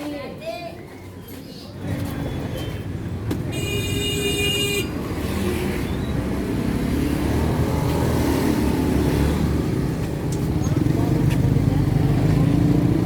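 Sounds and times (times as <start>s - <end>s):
road traffic engines: 0.0s - 13.0s
vehicle horn: 3.5s - 5.0s.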